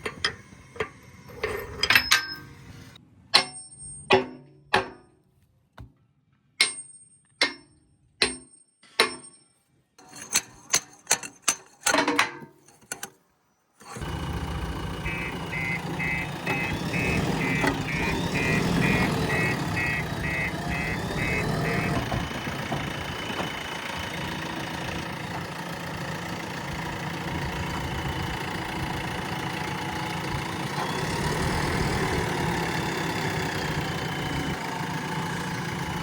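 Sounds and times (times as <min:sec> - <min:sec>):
metal clanks with ringing tail: 0:03.3 - 0:05.0
diesel engine running: 0:13.8 - 0:36.0
repeating reversing beep: 0:15.0 - 0:22.0.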